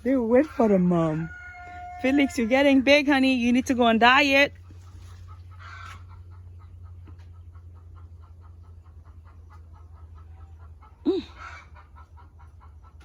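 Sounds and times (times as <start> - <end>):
low steady rumble: 0.0 - 13.0
chickens clucking: 4.6 - 13.0.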